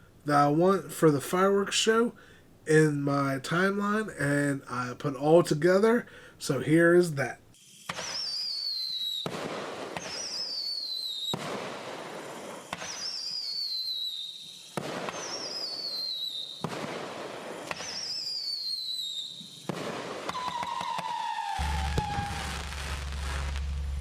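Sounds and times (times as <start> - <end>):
firework cracks: 7.5 - 24.0
whistling fireworks: 7.5 - 24.0.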